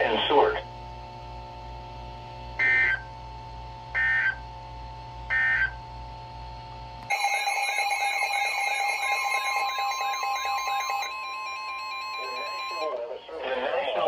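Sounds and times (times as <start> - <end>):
warbling electronic alarm tone: 2.6 - 3.1, 7.1 - 13.0.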